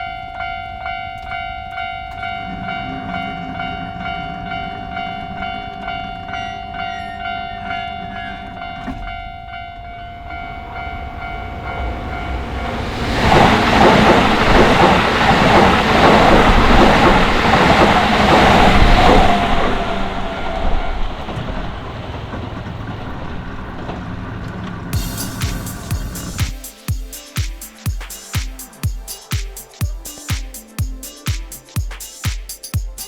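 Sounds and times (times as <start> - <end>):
crossing warning bell: 0.0 - 22.2, 24.9 - 33.0
train wheels clattering: 12.1 - 33.0.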